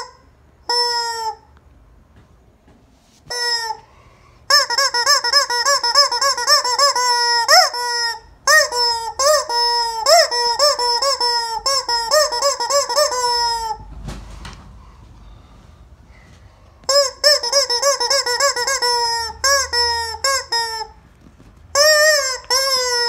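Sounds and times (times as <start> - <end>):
rubber chicken toy squeaking: 0.0 - 1.5, 3.3 - 3.8, 4.5 - 13.9, 16.8 - 21.0, 21.7 - 23.0.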